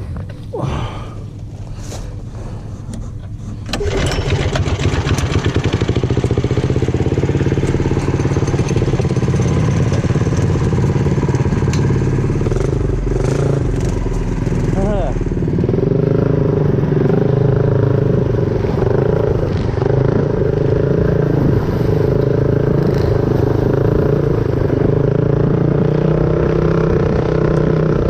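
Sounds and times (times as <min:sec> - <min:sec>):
small engine idling: 0:01.6 - 0:15.5.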